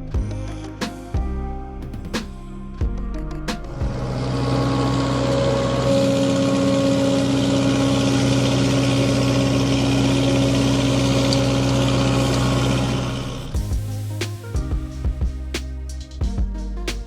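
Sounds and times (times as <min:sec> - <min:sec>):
engine-like drone with hiss: 0:04.0 - 0:15.0.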